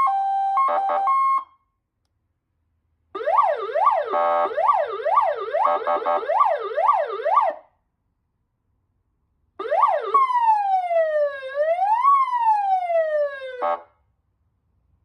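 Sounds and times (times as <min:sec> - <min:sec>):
electronic siren yelp and wail: 0:00.0 - 0:01.5, 0:03.2 - 0:07.6, 0:09.6 - 0:13.8.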